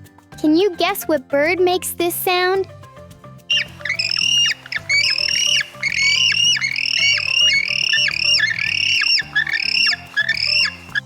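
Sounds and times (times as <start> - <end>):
background music: 0.0 - 11.0
penguin squawking: 3.5 - 11.0.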